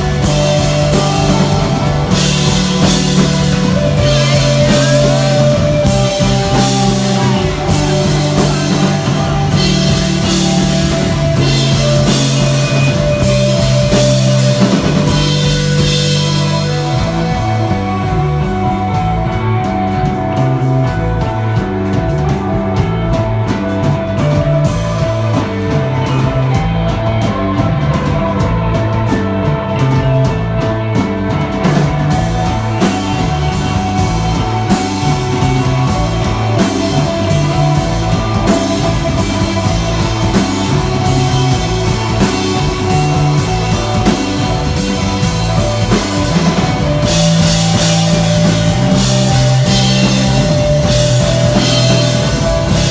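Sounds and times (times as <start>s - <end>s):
rock band playing live: 0.0s - 52.9s.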